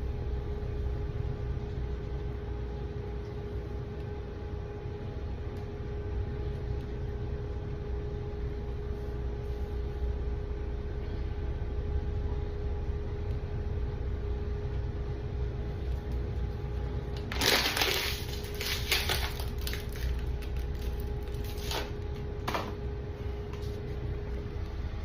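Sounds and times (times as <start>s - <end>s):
faint hum: 0.0s - 25.0s
crackling crinkling noise: 15.7s - 22.3s.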